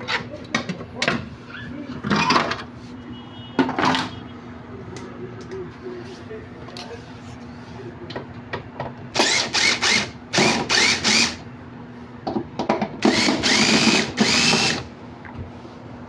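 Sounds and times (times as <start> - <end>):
electric drill bursts: 9.2 - 11.4, 13.0 - 14.9.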